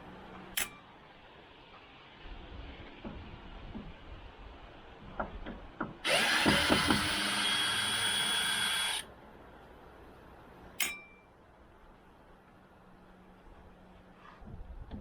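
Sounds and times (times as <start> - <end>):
sharp click: 0.6 - 0.8, 10.8 - 11.1
electric drill running: 6.0 - 9.0.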